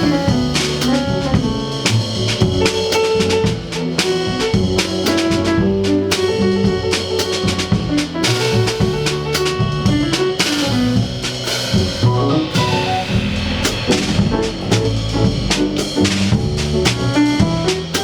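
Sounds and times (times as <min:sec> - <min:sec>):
jazz-like instrumental music: 0:00.0 - 0:18.0.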